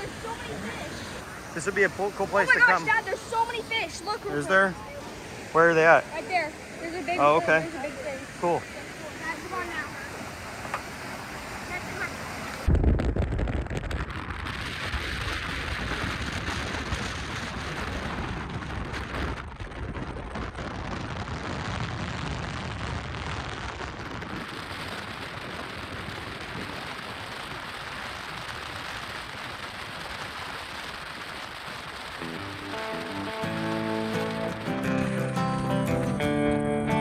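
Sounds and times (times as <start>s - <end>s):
flowing water rushing: 0.0s - 13.2s, 24.5s - 35.6s.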